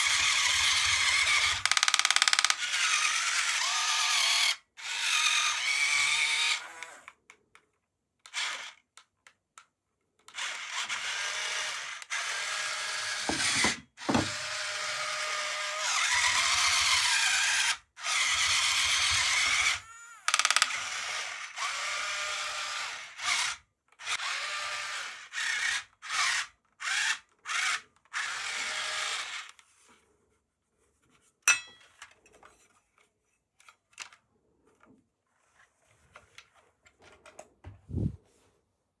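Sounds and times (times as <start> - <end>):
small motor whirring: 0.0 - 7.1, 10.4 - 29.5.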